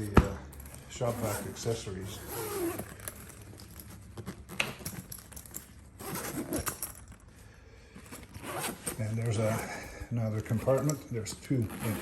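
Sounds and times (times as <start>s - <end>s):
bag rustling: 0.0s - 12.0s.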